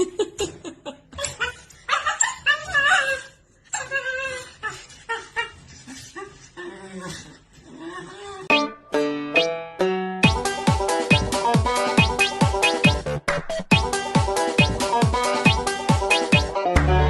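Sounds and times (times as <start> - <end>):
dog whining and yipping: 1.2 - 7.2.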